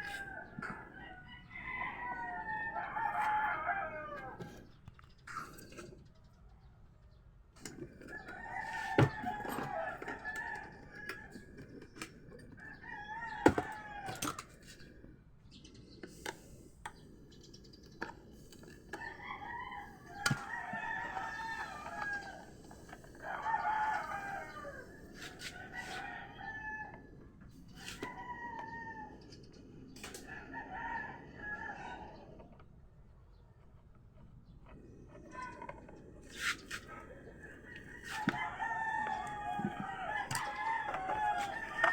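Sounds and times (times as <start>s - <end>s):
rooster crowing: 0.0s - 4.5s, 8.2s - 11.4s, 19.0s - 27.0s, 37.4s - 41.9s
chickens calling: 0.0s - 4.7s, 16.3s - 29.4s, 36.2s - 41.9s.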